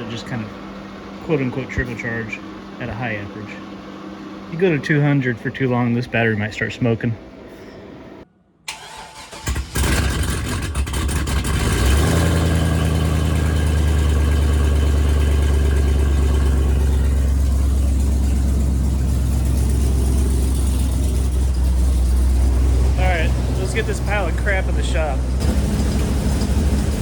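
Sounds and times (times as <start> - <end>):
car engine cranking and idling: 8.7 - 27.0.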